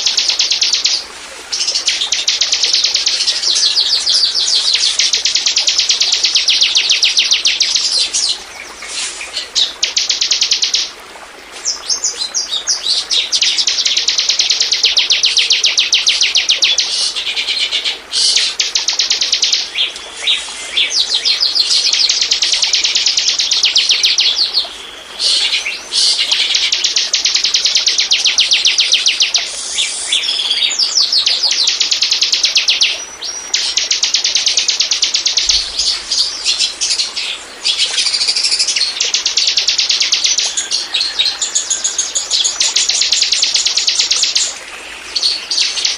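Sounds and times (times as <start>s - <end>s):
fast high-pitched bird trills: 13.4s - 17.1s, 18.2s - 44.6s.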